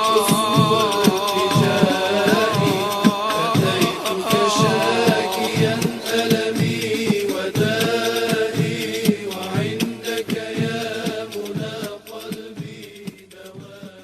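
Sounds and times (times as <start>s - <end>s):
layered voices chanting: 0.0s - 14.0s
steady beat: 0.0s - 14.0s.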